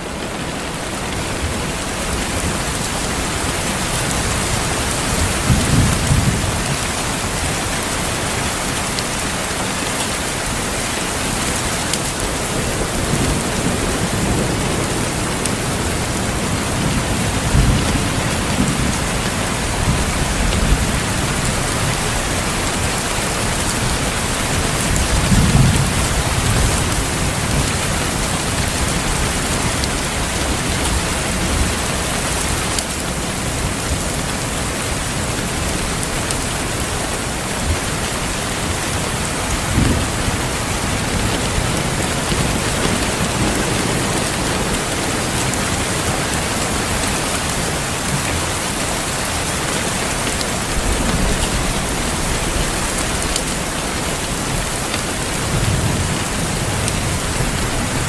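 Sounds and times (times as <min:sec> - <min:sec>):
heavy rain: 0:00.0 - 0:58.0
thunder rumbling: 0:00.8 - 0:08.6, 0:11.4 - 0:48.4.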